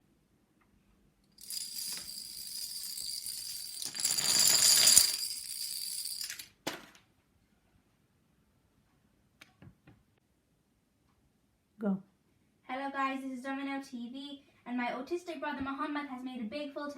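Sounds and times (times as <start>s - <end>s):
high-pitched metallic jingling: 1.4s - 6.4s.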